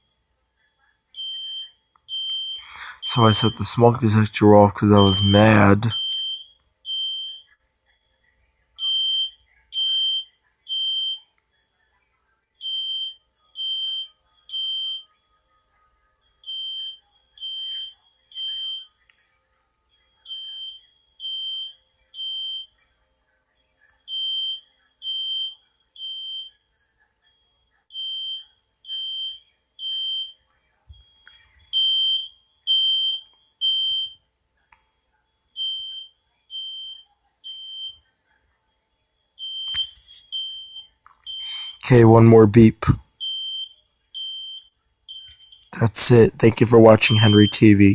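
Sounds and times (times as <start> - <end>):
smoke detector alarm beeps: 1.1 - 7.5, 8.8 - 11.3, 12.6 - 15.2, 16.3 - 19.0, 20.0 - 22.8, 24.0 - 26.6, 27.9 - 34.2, 35.5 - 38.1, 39.4 - 47.9.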